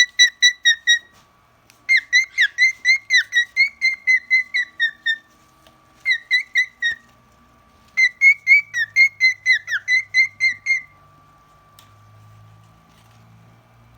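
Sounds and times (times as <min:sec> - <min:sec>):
cockatiel whistling: 0:00.0 - 0:01.1, 0:01.9 - 0:05.2, 0:06.0 - 0:07.0, 0:08.0 - 0:11.0.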